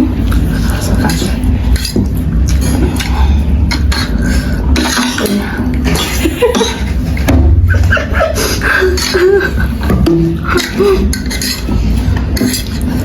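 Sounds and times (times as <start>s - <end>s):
slurping noodles: 0.0s - 7.3s
muffled vocal sounds: 0.0s - 13.0s.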